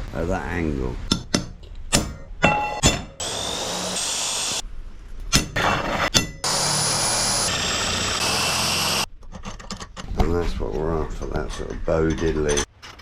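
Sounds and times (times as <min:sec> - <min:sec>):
power tool whining: 0:03.2 - 0:04.6, 0:06.4 - 0:09.1.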